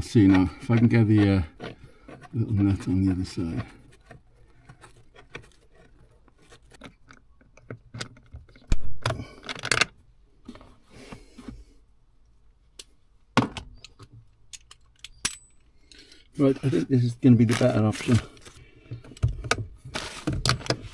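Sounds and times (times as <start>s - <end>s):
small metal parts clinking: 13.8s - 15.7s.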